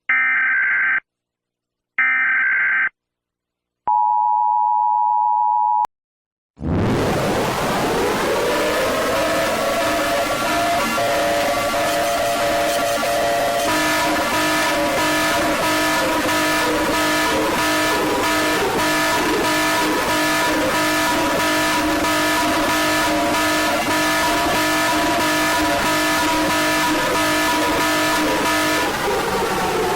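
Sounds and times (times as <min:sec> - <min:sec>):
emergency alert alarm tone: 0:00.1 - 0:01.0, 0:07.9 - 0:29.9.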